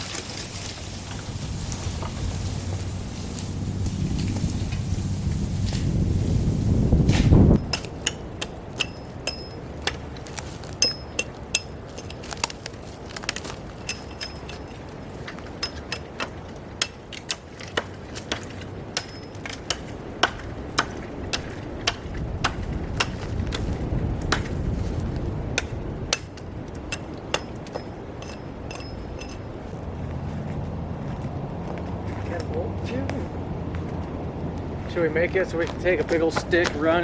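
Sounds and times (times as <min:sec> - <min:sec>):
wind rumble on microphone: 0:00.0 - 0:17.2, 0:18.0 - 0:37.0
hand tool striking wood: 0:07.1 - 0:12.6, 0:13.3 - 0:23.7, 0:24.3 - 0:24.6, 0:25.6 - 0:29.4.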